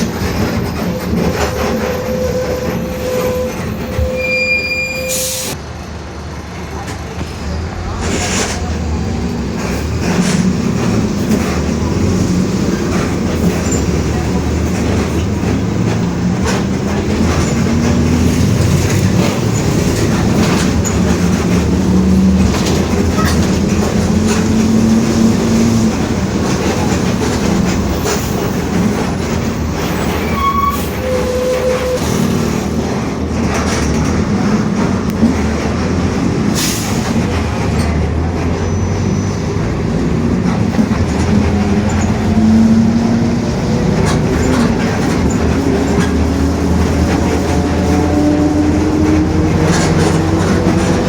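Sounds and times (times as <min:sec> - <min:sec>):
bus engine and road noise: 0:00.0 - 0:51.0
short beep: 0:01.0 - 0:05.5.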